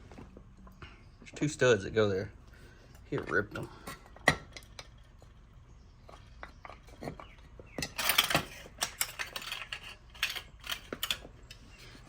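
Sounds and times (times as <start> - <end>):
metal tools clinking and clattering: 6.1 - 12.0.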